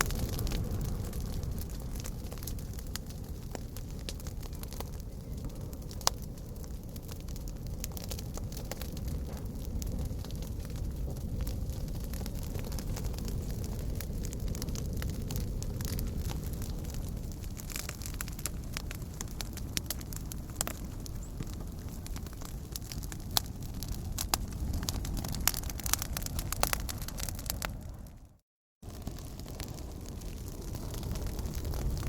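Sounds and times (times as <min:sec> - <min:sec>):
fire crackling and popping: 0:00.0 - 0:32.0
low fire rumble: 0:00.0 - 0:32.0.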